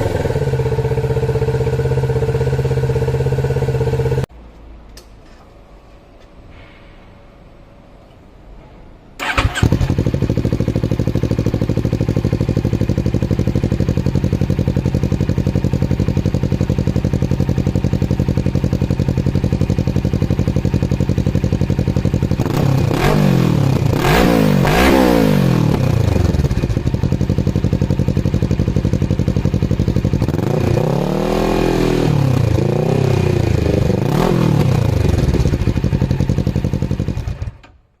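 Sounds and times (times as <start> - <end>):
motorcycle engine idling: 0.0 - 4.3, 9.2 - 24.0, 24.7 - 31.3, 32.2 - 37.7.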